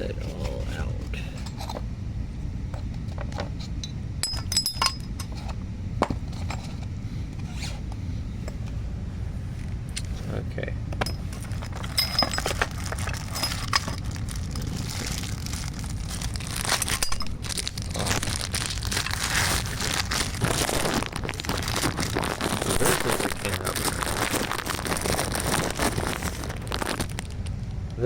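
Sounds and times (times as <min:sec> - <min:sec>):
packaging crinkling: 0:11.2 - 0:27.7.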